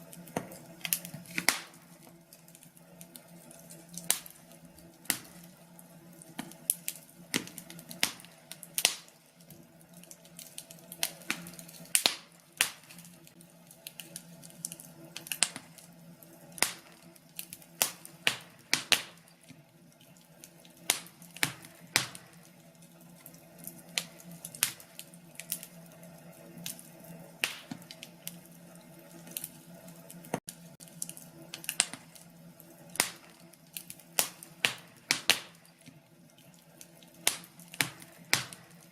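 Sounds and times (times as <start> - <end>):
wood fire crackling: 0.0 - 38.9.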